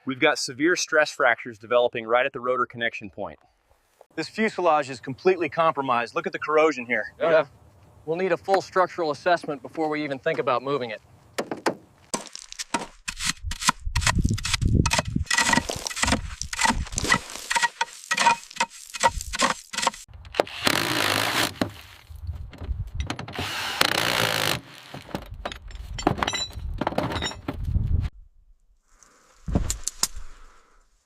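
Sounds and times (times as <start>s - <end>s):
rasping sawing: 15.3s - 21.6s
metal clanks and knocks: 25.0s - 27.6s.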